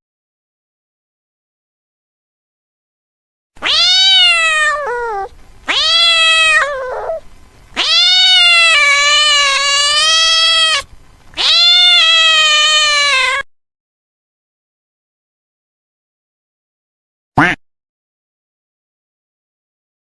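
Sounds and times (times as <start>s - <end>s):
cat meowing: 3.6s - 7.2s, 7.8s - 13.5s.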